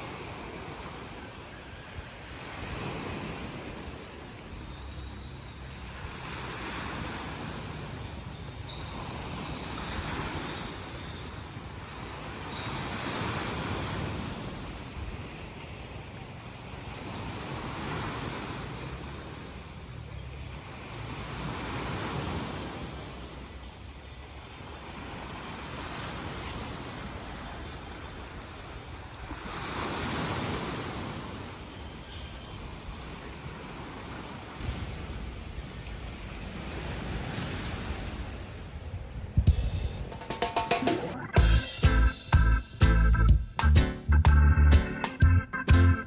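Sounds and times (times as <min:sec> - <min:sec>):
sea waves washing onto shore: 0:00.0 - 0:41.2
wind rumbling on microphone: 0:33.7 - 0:40.2.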